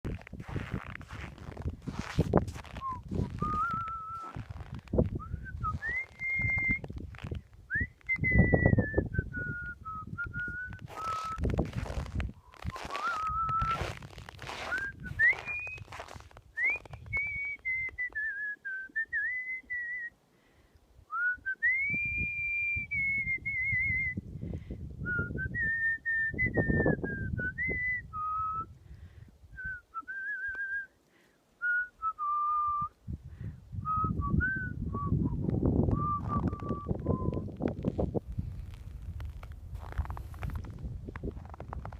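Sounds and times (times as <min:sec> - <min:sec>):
person whistling a melody: 0:02.0 - 0:20.1, 0:21.1 - 0:24.2, 0:25.0 - 0:28.8, 0:29.6 - 0:31.0, 0:31.6 - 0:33.0, 0:33.8 - 0:37.6.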